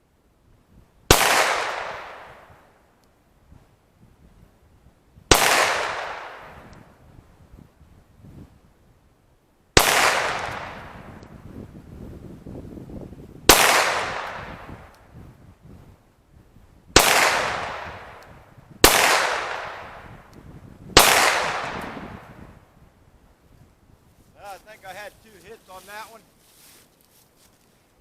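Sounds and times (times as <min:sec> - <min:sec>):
pistol shots echoing: 0:01.1 - 0:02.5, 0:05.3 - 0:06.7, 0:09.8 - 0:11.0, 0:17.0 - 0:18.2, 0:18.8 - 0:20.1, 0:21.0 - 0:22.2.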